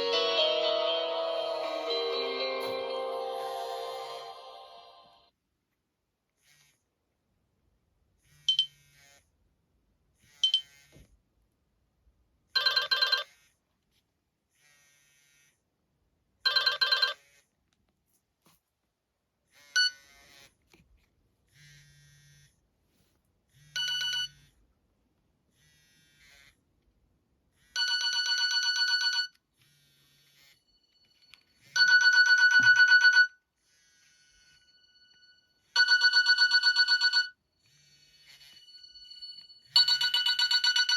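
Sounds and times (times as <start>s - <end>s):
pulsed electronic phone ringtone: 0.0s - 5.2s, 31.8s - 33.3s, 34.4s - 40.9s.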